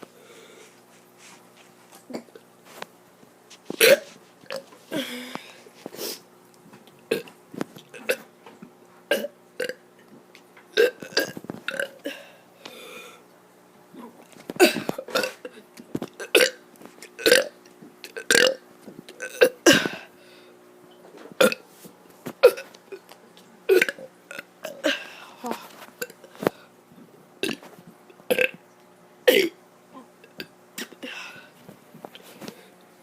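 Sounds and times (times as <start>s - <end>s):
child burping: 7.1s - 7.3s, 9.1s - 9.8s, 14.0s - 15.6s, 23.7s - 26.2s, 29.3s - 31.0s.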